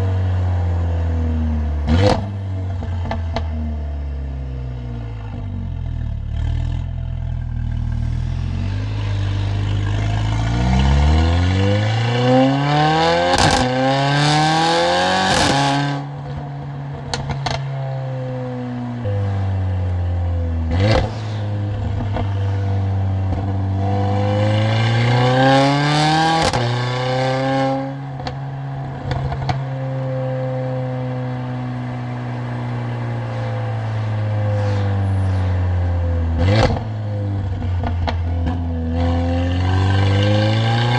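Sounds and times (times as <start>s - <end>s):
car engine accelerating hard: 0.0s - 16.4s, 17.0s - 40.9s
car engine cruising drone: 0.0s - 40.9s
exhaust cracks and pops: 13.3s - 13.7s, 37.5s - 38.6s.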